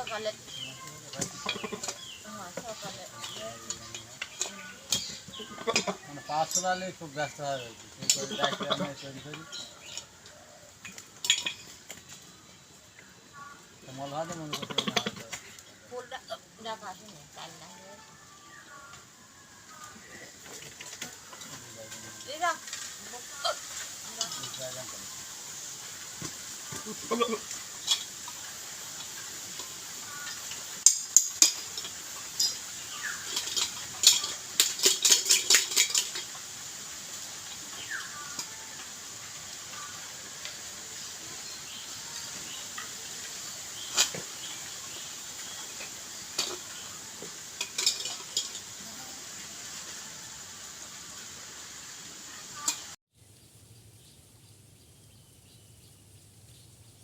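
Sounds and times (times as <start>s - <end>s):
steady high hiss: 0.0s - 57.0s
sharp clinks and clatter: 10.8s - 12.0s, 29.6s - 36.6s, 42.7s - 48.8s.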